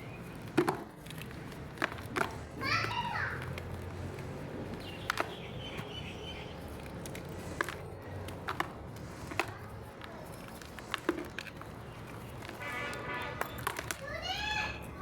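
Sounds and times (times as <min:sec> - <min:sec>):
chalk block cracking: 0:06.6 - 0:14.1.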